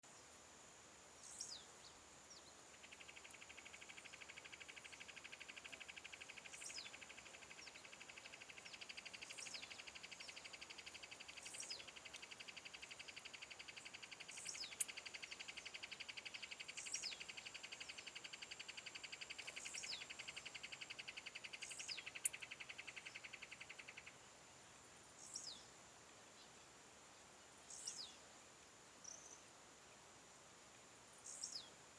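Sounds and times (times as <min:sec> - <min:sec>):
insect trill: 0:00.2 - 0:24.4.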